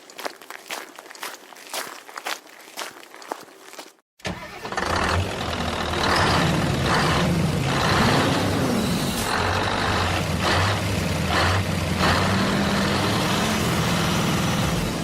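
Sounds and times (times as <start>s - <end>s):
truck engine running: 4.3s - 15.0s.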